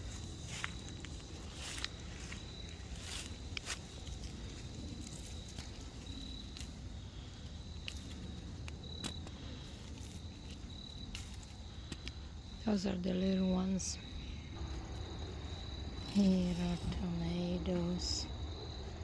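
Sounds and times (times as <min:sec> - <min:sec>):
plants rustling and clicking: 0:00.0 - 0:12.3, 0:15.9 - 0:17.3
crickets trilling: 0:00.0 - 0:19.0.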